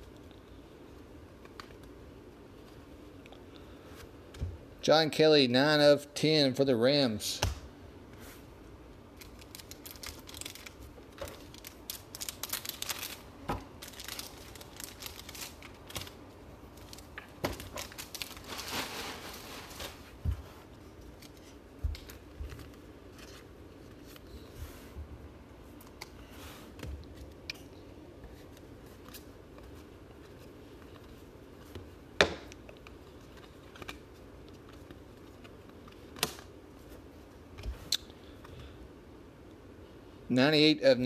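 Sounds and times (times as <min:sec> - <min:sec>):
foil wrappers crinkling and tearing: 0:09.2 - 0:20.2.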